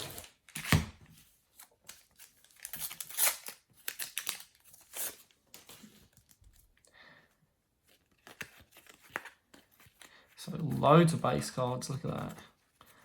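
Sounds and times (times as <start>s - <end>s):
foil packet tearing: 2.0s - 5.2s
wrapper and cards rustling: 7.8s - 13.0s.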